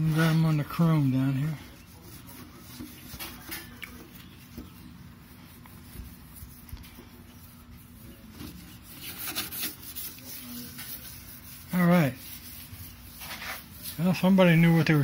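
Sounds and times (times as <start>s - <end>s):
cloth rubbing on chrome: 0.0s - 15.0s.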